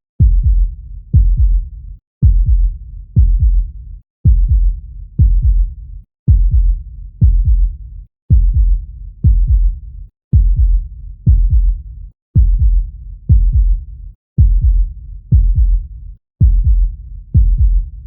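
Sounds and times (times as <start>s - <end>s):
heartbeat double thump: 0.2s - 1.6s, 2.2s - 3.6s, 4.2s - 5.7s, 6.3s - 7.7s, 8.3s - 9.7s, 10.3s - 11.8s, 12.4s - 13.8s, 14.4s - 15.8s, 16.4s - 17.8s.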